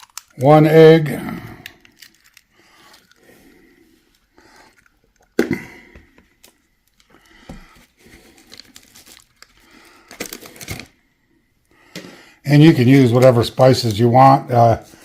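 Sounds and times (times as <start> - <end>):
egg cracking: 0.0 - 0.7, 1.5 - 11.0.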